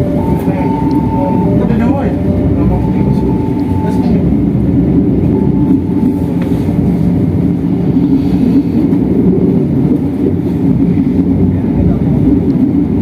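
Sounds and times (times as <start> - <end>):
train rumbling from inside carriage: 0.0 - 13.0.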